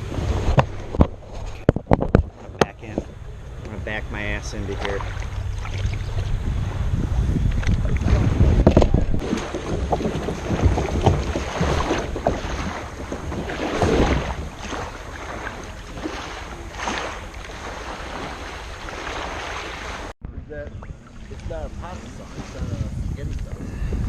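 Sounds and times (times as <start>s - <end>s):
wind buffeting microphone: 0.0s - 24.0s
kayak paddle splashing in water: 4.6s - 6.7s, 7.5s - 20.1s.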